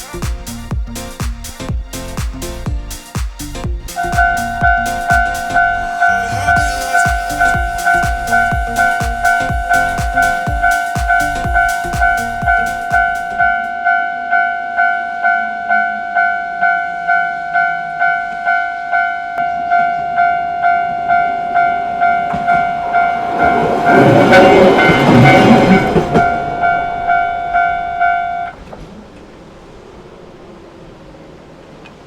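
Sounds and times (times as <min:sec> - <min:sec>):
train rumble: 0:00.0 - 0:13.8, 0:22.3 - 0:31.9
railway crossing bell ringing: 0:04.0 - 0:28.6.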